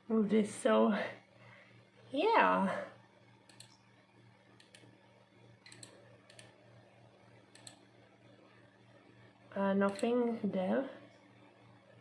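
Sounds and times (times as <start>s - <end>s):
faint low hum: 0.0s - 12.0s
computer mouse clicks: 3.4s - 3.8s, 4.6s - 4.9s, 5.6s - 6.6s, 7.5s - 7.9s, 9.9s - 10.1s.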